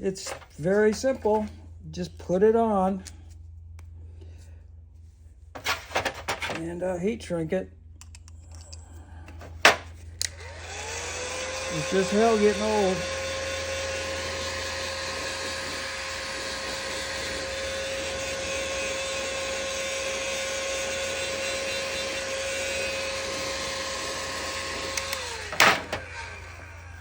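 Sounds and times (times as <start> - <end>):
fan spinning down: 8.8 - 27.0
heat gun whining: 9.3 - 27.0.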